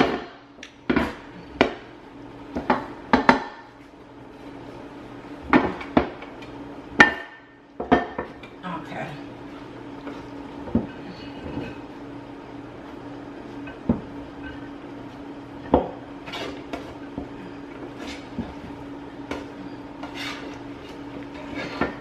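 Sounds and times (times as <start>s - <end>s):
steady low hum: 0.0s - 22.0s
pots and utensil clinking and scraping: 16.2s - 18.6s, 19.3s - 22.0s.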